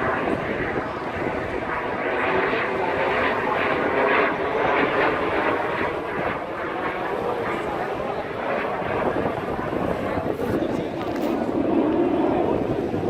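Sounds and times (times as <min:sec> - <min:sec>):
aircraft flying by: 0:00.0 - 0:13.0.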